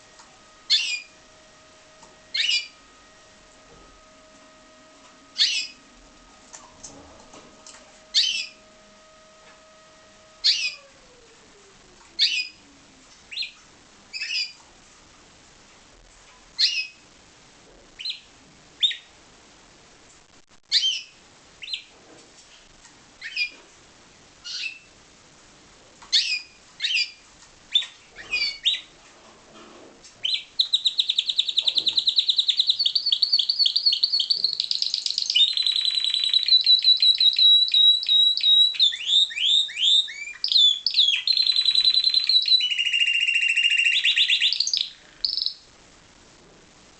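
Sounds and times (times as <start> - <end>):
canary chirping and trilling: 0.6 - 1.3, 2.2 - 3.2, 5.3 - 6.9, 8.0 - 9.2, 9.9 - 11.0, 12.2 - 12.6, 13.3 - 14.6, 16.6 - 17.0, 18.0 - 19.1, 20.7 - 21.9, 23.2 - 23.6, 24.4 - 24.9, 26.1 - 29.0, 30.2 - 45.7.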